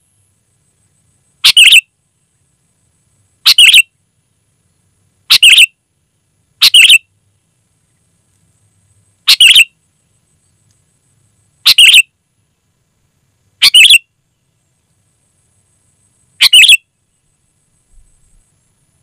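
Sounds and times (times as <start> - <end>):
bird calling: 1.4 - 1.8, 3.4 - 3.8, 5.3 - 5.7, 6.6 - 7.0, 9.2 - 9.7, 11.6 - 12.0, 13.6 - 14.0, 16.4 - 16.8.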